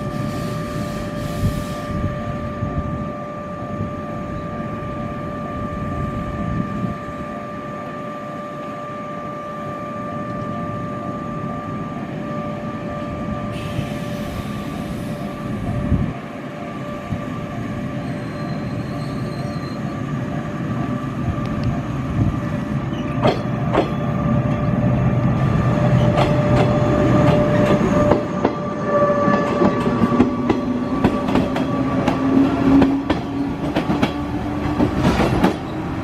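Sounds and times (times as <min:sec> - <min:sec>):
electric train rumble and whine: 0:00.0 - 0:36.0
air hiss: 0:00.1 - 0:02.0, 0:13.5 - 0:15.5.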